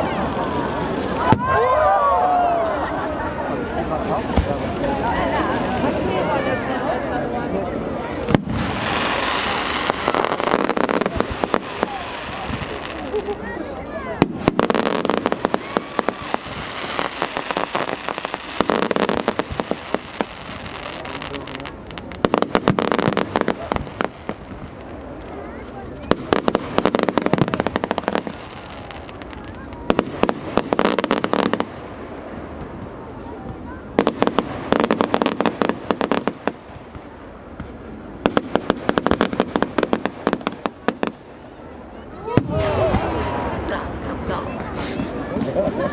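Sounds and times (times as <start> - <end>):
fireworks popping and crackling: 8.2 - 41.5, 42.2 - 45.9.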